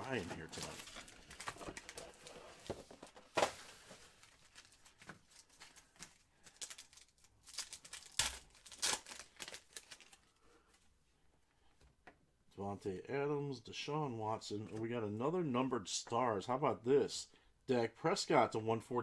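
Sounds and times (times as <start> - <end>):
card packs ripping open: 0.0 - 10.3
wrappers crinkling: 0.0 - 10.4.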